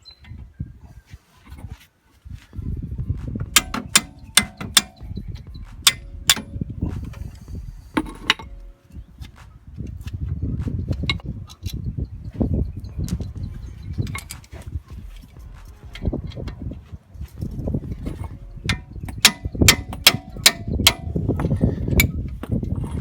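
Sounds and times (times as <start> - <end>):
wrench clicking on metal bolts: 3.6 - 5.0, 5.8 - 6.6, 8.0 - 8.5, 18.1 - 23.0
low rumble: 5.0 - 23.0.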